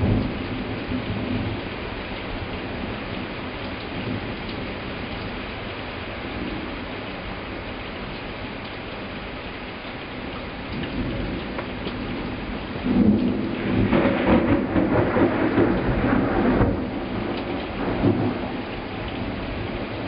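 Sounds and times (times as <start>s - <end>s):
heavy rain: 0.0s - 20.0s
thunder rolling: 10.8s - 20.0s.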